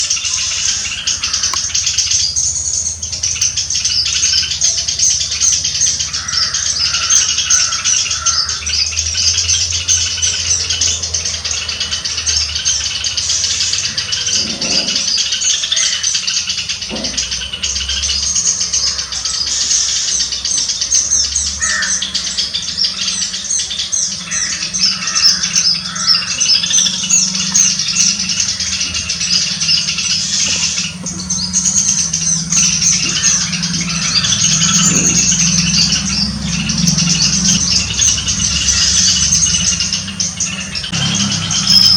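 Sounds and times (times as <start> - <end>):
flock of small birds chirping: 0.0 - 41.9.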